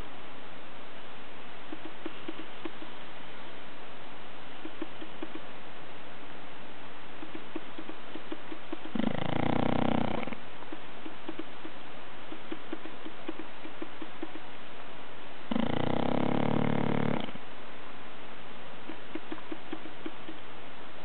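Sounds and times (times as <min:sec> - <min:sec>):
loud snores: 0:08.9 - 0:10.4, 0:15.5 - 0:17.4.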